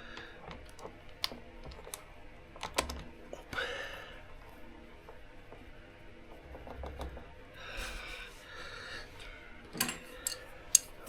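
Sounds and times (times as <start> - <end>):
person breathing out: 7.6 - 9.2
hand tool clicks: 10.2 - 11.0.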